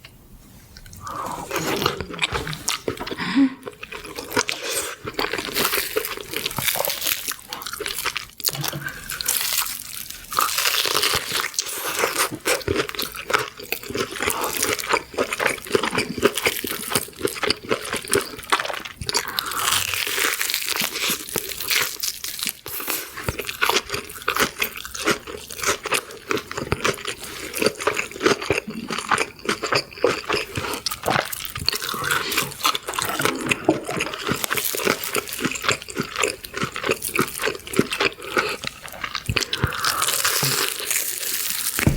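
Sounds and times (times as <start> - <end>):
crunchy chewing: 0.8 - 41.9.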